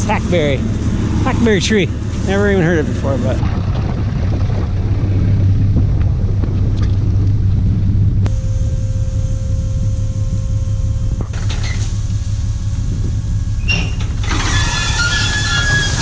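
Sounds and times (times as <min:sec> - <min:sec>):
excavator diesel engine running: 0:00.0 - 0:16.0
steady whine: 0:00.0 - 0:16.0
metallic squealing: 0:13.5 - 0:16.0.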